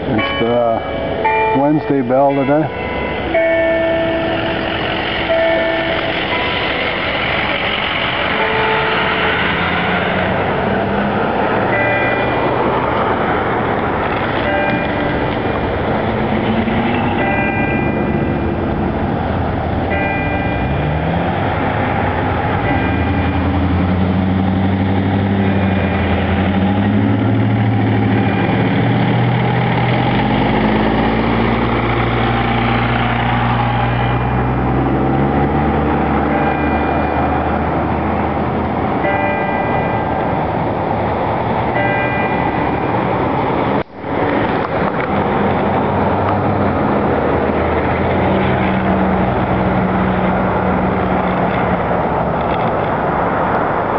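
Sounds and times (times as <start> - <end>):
church bell tolling: 0.0 - 9.9, 11.6 - 12.9, 14.4 - 15.3, 16.8 - 18.7, 19.9 - 21.0, 36.2 - 37.5, 39.0 - 40.4, 41.7 - 43.0
traffic noise: 0.0 - 53.9
vehicle engine passing: 0.0 - 53.9.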